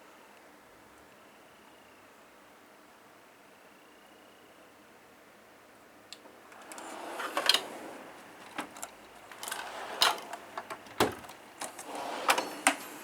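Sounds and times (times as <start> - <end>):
metal drawer sliding: 6.5 - 13.0.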